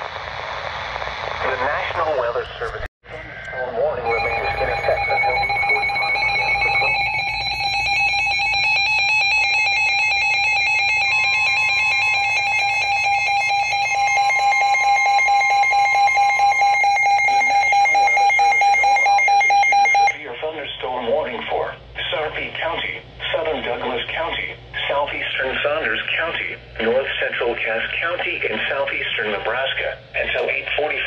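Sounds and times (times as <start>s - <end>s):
pulsing emergency alert tone: 3.8s - 20.2s
higher electronic tone: 4.0s - 20.2s.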